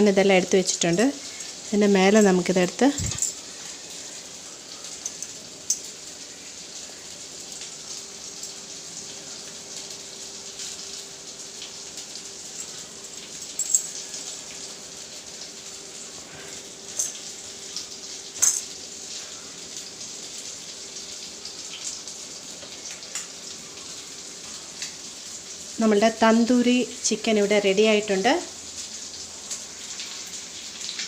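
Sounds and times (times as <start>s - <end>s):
steady hiss: 0.0s - 26.0s.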